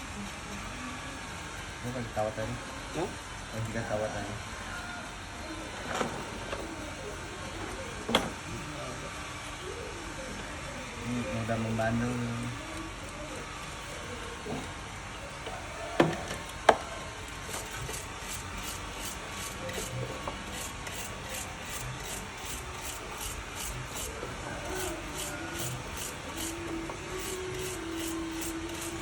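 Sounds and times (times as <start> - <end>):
hand rubbing engine part: 17.4 - 29.0.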